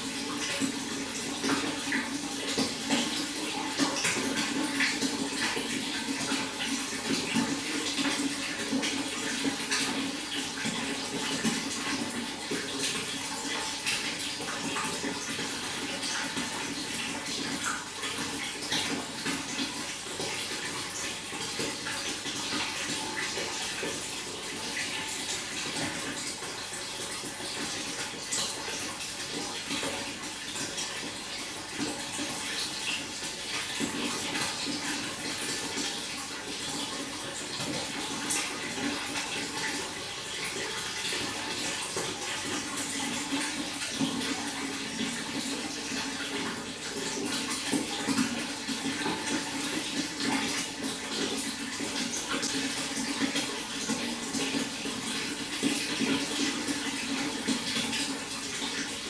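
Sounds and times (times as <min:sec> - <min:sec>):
running water splashing: 0:00.0 - 0:59.0.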